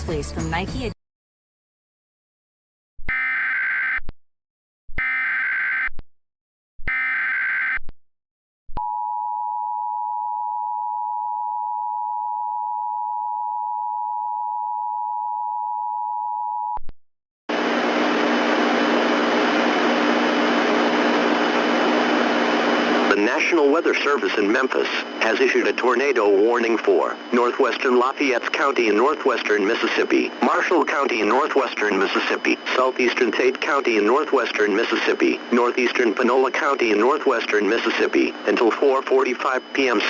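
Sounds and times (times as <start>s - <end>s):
loud steady hiss with hum: 17.5s - 38.8s
digital data tone bursts: 23.1s - 40.0s.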